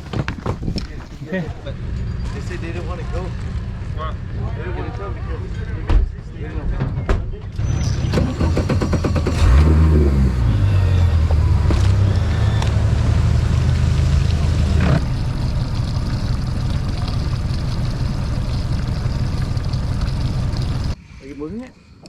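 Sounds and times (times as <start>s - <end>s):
outboard motor running: 7.6s - 21.0s.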